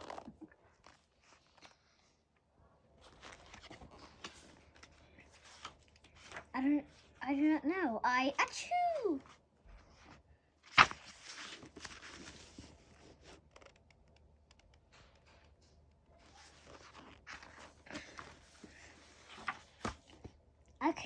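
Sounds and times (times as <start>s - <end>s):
paper rustling and scraping: 3.0s - 6.5s, 9.8s - 13.8s, 16.2s - 20.4s.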